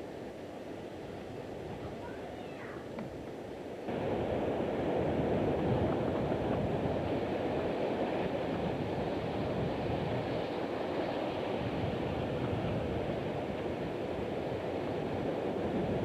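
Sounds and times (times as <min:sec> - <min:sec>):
wind rushing on microphone: 0:03.9 - 0:16.0.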